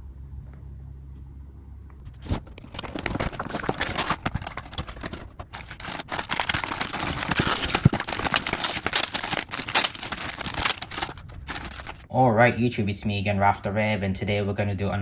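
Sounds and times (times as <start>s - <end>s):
packaging crinkling and tearing: 2.1s - 12.1s.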